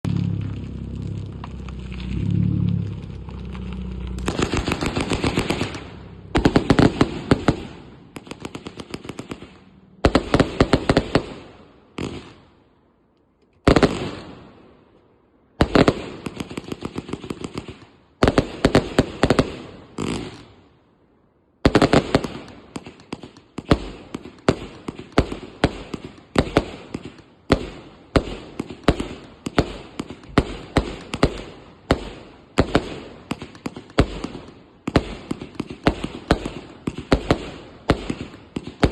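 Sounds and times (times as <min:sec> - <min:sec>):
firework launch bangs: 0:00.0 - 0:12.4
firework crackling bursts: 0:00.0 - 0:12.6, 0:13.6 - 0:14.7, 0:15.6 - 0:20.7, 0:21.6 - 0:38.9.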